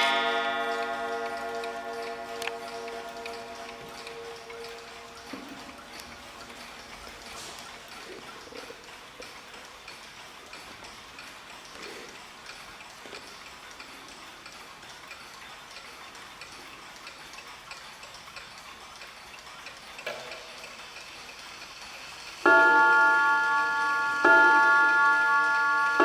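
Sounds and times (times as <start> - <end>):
mantel clocks ticking: 0.0 - 26.0.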